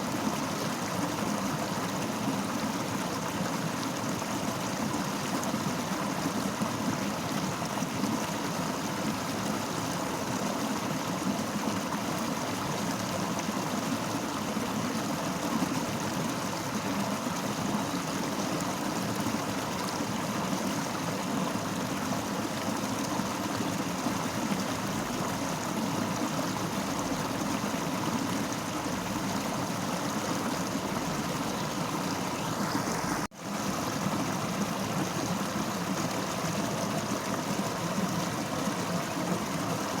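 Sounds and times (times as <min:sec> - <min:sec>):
river rushing: 0:21.5 - 0:37.2.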